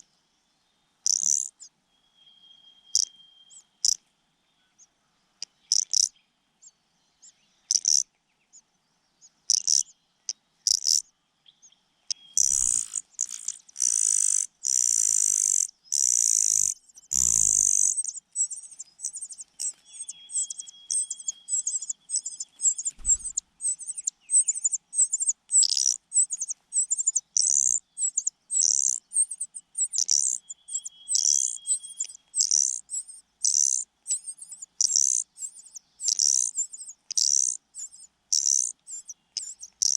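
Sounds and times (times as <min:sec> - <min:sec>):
chicks cheeping for food: 0:01.1 - 0:01.6, 0:02.8 - 0:04.0, 0:09.5 - 0:10.0, 0:12.0 - 0:39.9.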